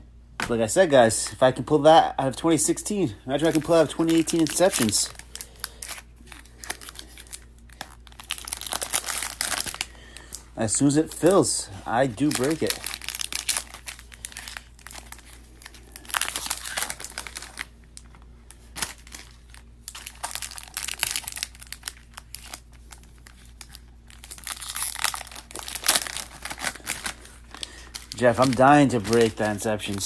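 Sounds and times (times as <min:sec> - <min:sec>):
plastic packaging crinkling and tearing: 0:02.9 - 0:30.0
cards being handled: 0:12.0 - 0:30.0.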